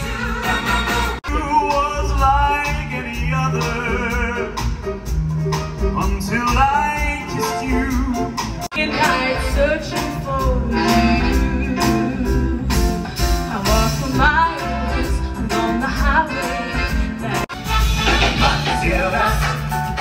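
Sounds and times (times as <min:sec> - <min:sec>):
upbeat music with singing: 0:05.6 - 0:20.0.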